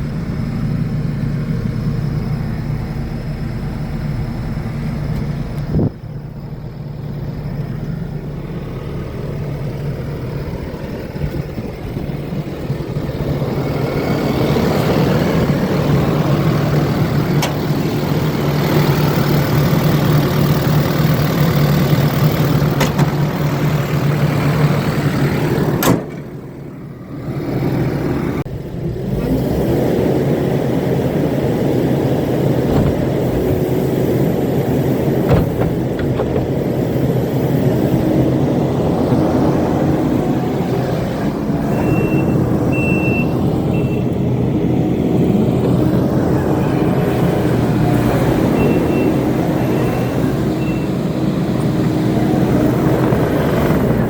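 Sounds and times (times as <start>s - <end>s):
diesel engine droning: 0.0s - 54.0s.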